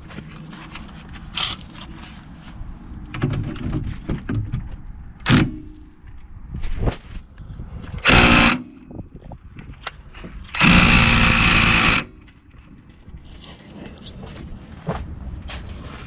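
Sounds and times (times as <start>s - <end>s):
cordless impact wrench running: 8.0s - 8.7s, 10.5s - 12.2s.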